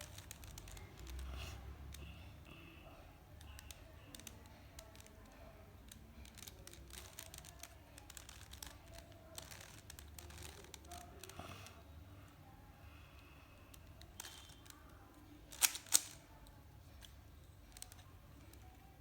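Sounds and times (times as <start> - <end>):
plastic puzzle cube clicking: 0.0 - 2.0, 3.4 - 11.4, 13.7 - 16.3, 17.0 - 19.0.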